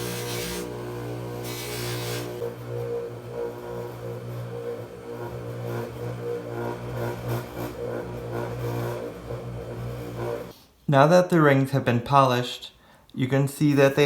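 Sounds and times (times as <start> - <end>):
buffing machine motor hum: 0.0 - 10.5.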